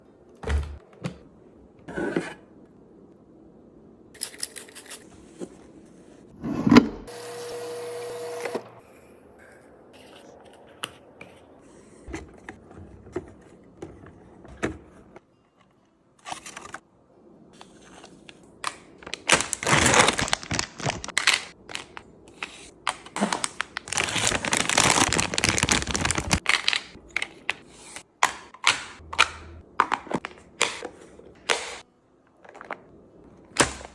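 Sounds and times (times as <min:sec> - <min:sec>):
dense rustling of packaging: 0:19.0 - 0:22.0, 0:23.2 - 0:27.6.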